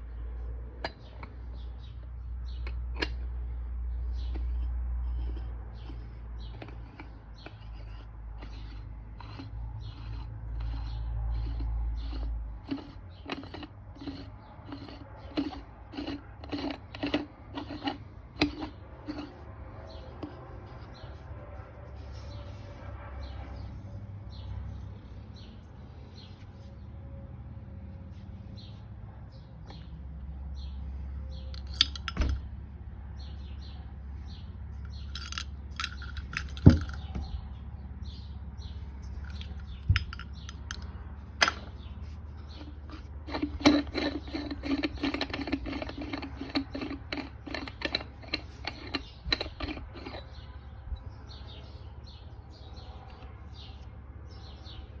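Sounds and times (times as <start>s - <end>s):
small metal pieces clinking: 35.0s - 37.0s.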